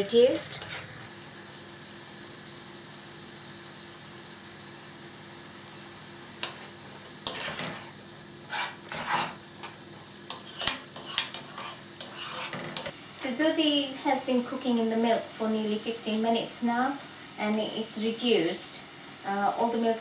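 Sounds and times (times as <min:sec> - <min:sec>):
faint steady hum: 0:00.0 - 0:20.0
spoon scraping a pan: 0:06.4 - 0:13.0.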